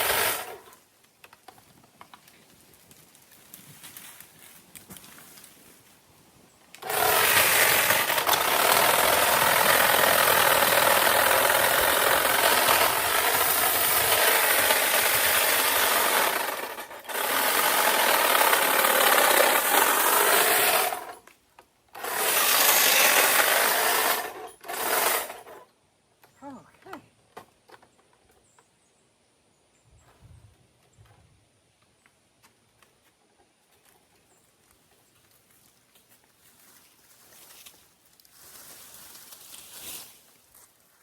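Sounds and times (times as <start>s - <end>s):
power tool cutting branches: 0.0s - 0.8s, 6.8s - 21.3s, 21.9s - 25.6s.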